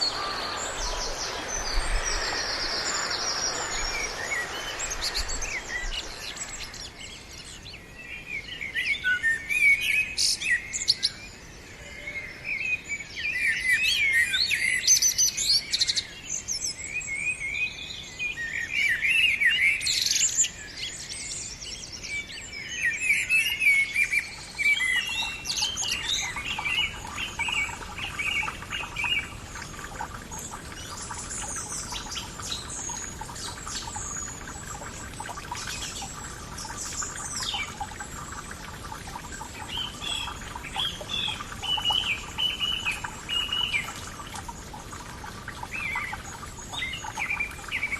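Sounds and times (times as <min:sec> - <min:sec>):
birds chirping and trilling: 0:00.0 - 0:47.9.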